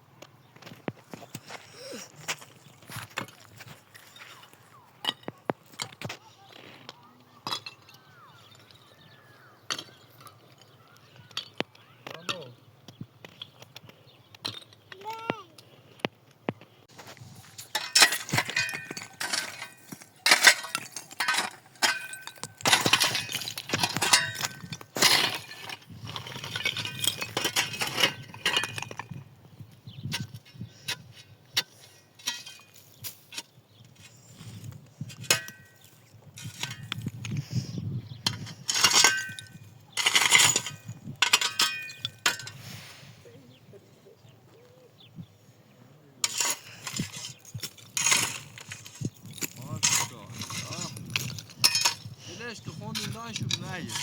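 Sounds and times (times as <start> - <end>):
clinking and rattling: 17.6 - 29.2, 38.2 - 42.6, 46.2 - 52.1.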